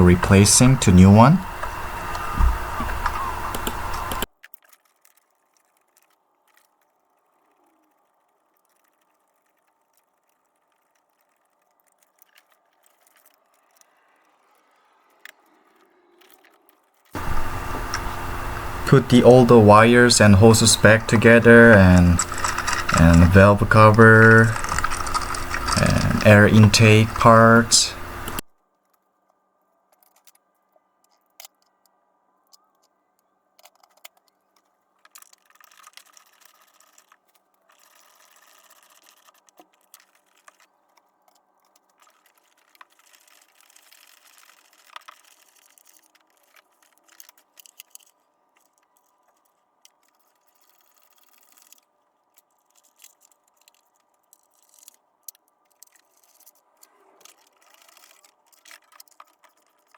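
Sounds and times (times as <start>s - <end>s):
tools clicking and rattling: 22.2s - 23.4s.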